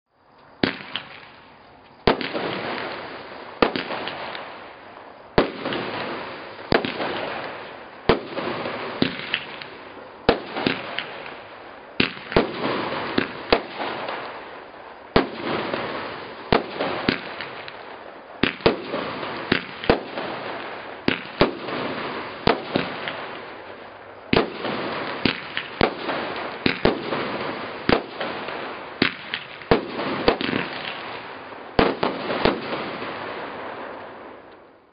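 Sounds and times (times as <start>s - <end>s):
crackle and hiss of shell bursts: 0.4s - 34.9s
fireworks bangs: 0.6s - 34.5s.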